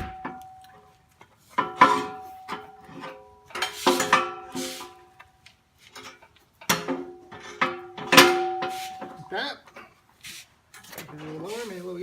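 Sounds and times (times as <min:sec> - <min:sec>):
steel parts clanking: 0:01.5 - 0:05.3.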